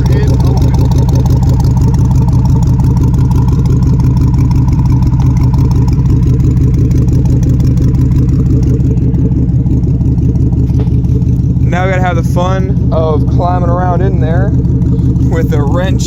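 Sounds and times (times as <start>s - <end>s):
car engine idling: 0.0s - 16.0s
exhaust leak ticking: 0.0s - 16.0s.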